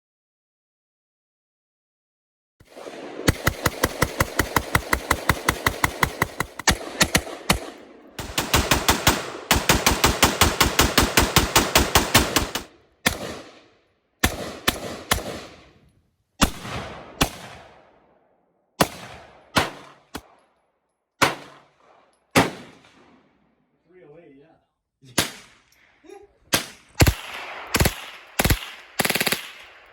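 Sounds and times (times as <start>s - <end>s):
rifle rapid-fire shots: 2.6s - 15.7s, 16.4s - 17.9s, 21.2s - 23.1s, 26.5s - 29.9s
single rifle shots with echo: 2.6s - 18.2s, 18.8s - 20.4s, 21.2s - 23.4s, 26.5s - 29.9s.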